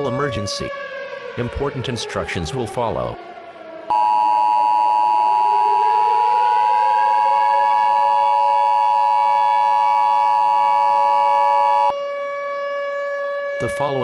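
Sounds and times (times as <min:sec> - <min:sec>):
siren winding up: 0:03.9 - 0:11.9
two-tone attention signal: 0:03.9 - 0:11.9.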